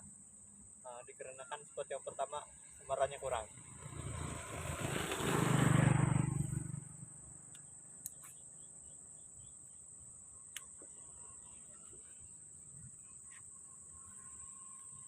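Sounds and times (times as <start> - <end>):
vehicle passing by: 2.6 - 7.5.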